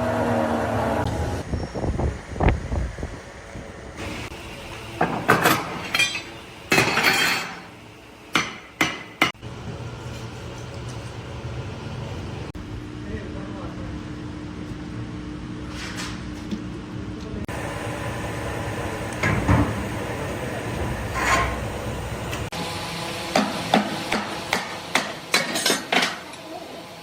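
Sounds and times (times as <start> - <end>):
steel pipe parts clanking: 5.0 - 7.7, 21.1 - 21.7, 25.3 - 26.3.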